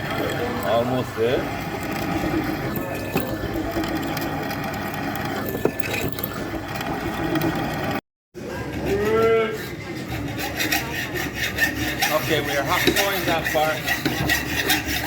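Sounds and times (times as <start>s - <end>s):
milling machine drilling steel: 0.0s - 7.8s.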